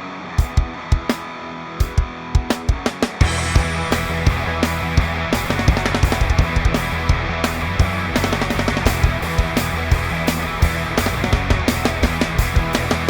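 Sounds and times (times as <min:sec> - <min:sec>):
distorted guitar: 0:00.0 - 0:13.0
drums: 0:00.0 - 0:13.0
bass guitar: 0:03.2 - 0:13.0.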